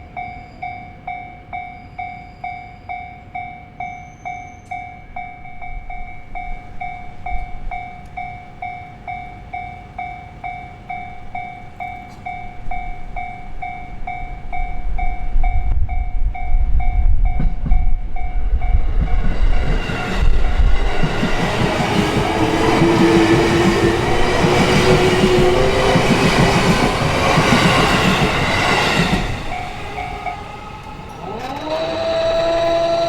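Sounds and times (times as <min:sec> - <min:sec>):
train rumble: 0:04.6 - 0:33.0
level-crossing alarm chime: 0:20.8 - 0:32.8.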